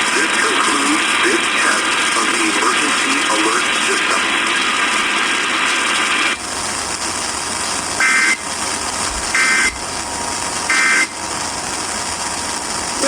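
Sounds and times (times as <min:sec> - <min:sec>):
buzzy hiss: 0:00.0 - 0:13.0
radio hiss: 0:00.0 - 0:13.0
electronic squawks: 0:08.0 - 0:08.5, 0:09.3 - 0:09.9, 0:10.7 - 0:11.2.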